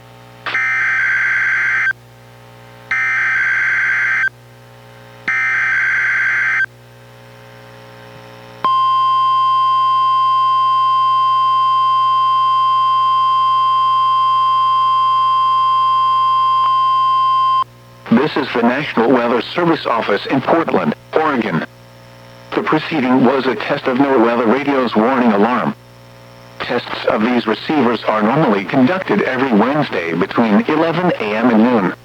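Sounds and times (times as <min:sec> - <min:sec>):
steady alarm tone: 0:00.5 - 0:01.9, 0:02.9 - 0:04.3, 0:05.3 - 0:06.7, 0:08.7 - 0:17.7.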